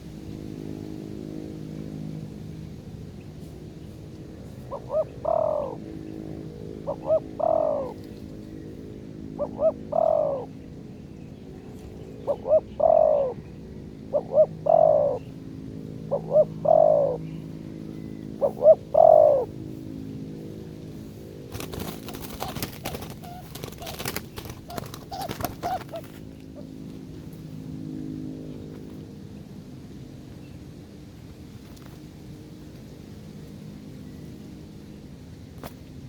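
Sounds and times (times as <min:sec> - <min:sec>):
dove cooing: 0:04.4 - 0:08.2, 0:09.2 - 0:10.7, 0:12.2 - 0:15.4, 0:16.0 - 0:17.5, 0:18.3 - 0:19.6, 0:21.5 - 0:26.8.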